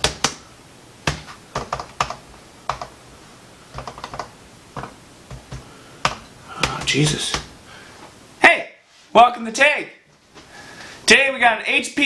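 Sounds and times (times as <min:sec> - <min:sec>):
typing on keyboard: 0:00.0 - 0:00.4, 0:01.1 - 0:02.9, 0:03.7 - 0:07.5.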